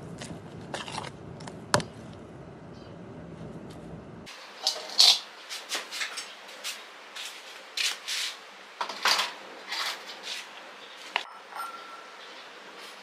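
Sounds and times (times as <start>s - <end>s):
rustling scraping strokes: 4.6s - 8.5s, 9.6s - 11.2s.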